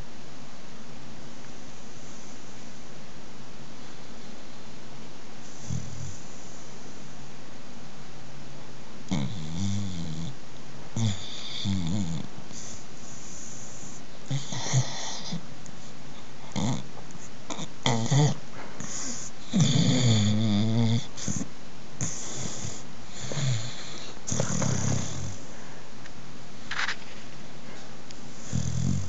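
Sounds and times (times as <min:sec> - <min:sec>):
dog snoring: 0:05.4 - 0:06.9, 0:09.1 - 0:10.4, 0:11.0 - 0:15.4, 0:16.4 - 0:25.5, 0:28.3 - 0:29.0.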